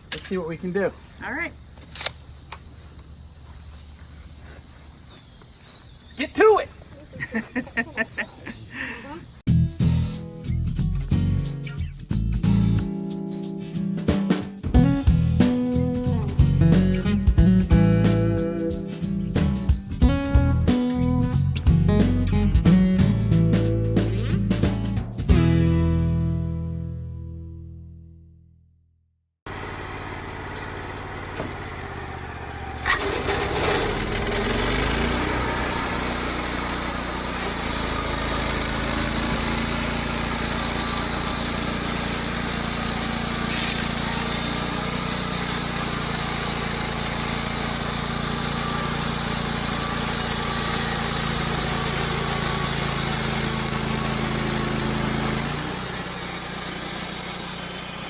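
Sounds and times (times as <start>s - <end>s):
sawmill engine revving: 29.5s - 58.0s.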